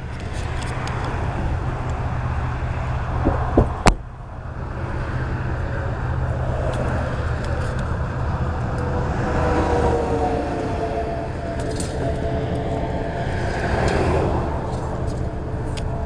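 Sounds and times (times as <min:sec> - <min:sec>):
vehicle engine and road rumble: 0:00.0 - 0:16.0
knocks: 0:03.2 - 0:04.0.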